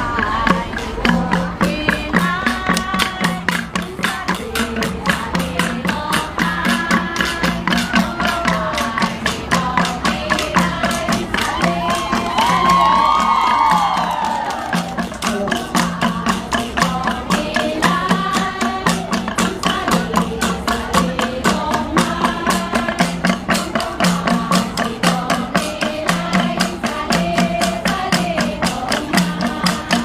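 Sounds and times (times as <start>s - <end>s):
bronze gongs struck in rhythm: 0.0s - 30.0s.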